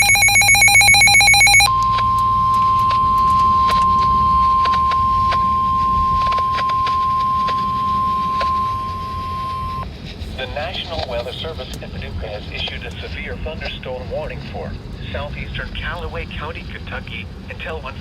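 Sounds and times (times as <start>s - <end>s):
static clicks crackling: 0.0s - 9.8s
steady warning alarm tone: 0.0s - 9.8s.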